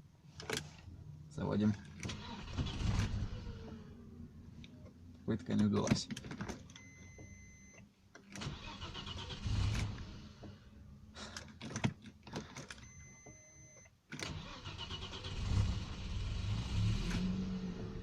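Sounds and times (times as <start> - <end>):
car starter cranking: 1.9 - 3.8, 8.2 - 10.6, 14.1 - 18.0.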